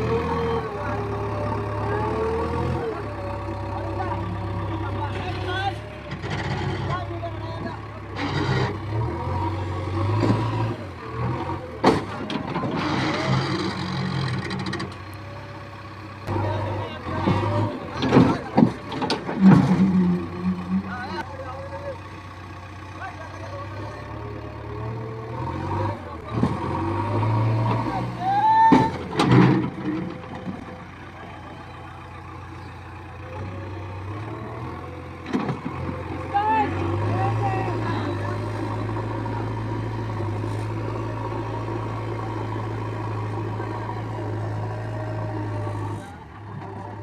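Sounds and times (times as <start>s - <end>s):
heavy diesel engine running: 0.0s - 47.0s.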